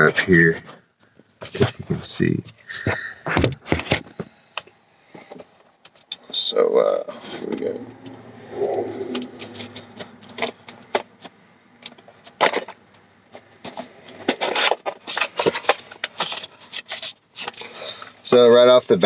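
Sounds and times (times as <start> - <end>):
packaging crackling and rustling: 13.6 - 18.1.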